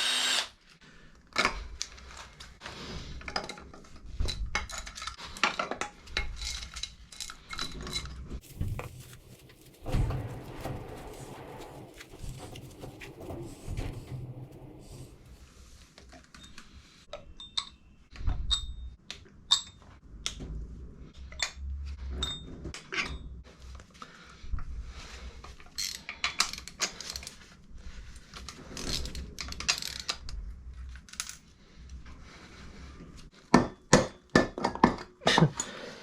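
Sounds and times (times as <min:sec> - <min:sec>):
metal scraping: 0:08.4 - 0:15.8.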